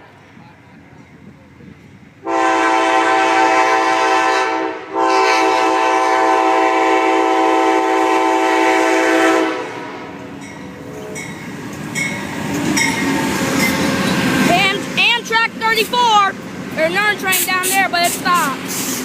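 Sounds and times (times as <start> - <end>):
train rumbling past: 0.0 - 19.0
locomotive air horn chord: 2.2 - 10.2.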